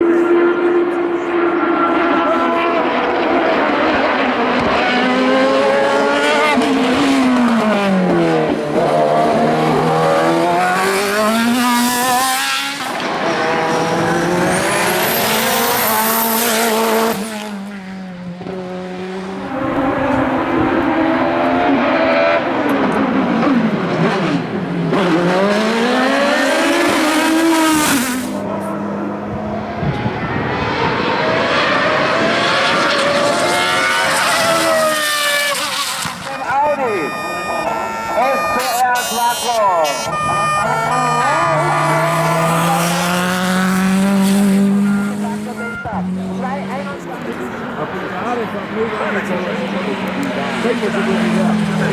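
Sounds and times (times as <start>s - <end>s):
race car engines revving: 0.0s - 51.9s
tyres squealing: 33.6s - 46.4s.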